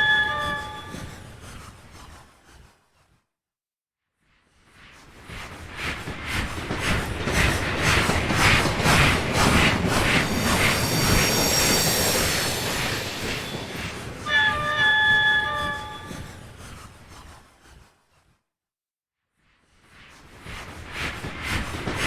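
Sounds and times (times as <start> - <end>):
steam locomotive chuffing: 5.7 - 17.0
high steady squeal: 7.4 - 16.6.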